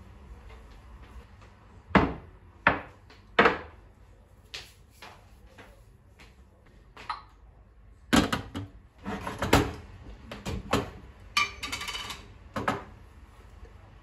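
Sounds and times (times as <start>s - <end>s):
kitchen items knocking and clattering: 8.1s - 9.8s, 10.4s - 12.9s.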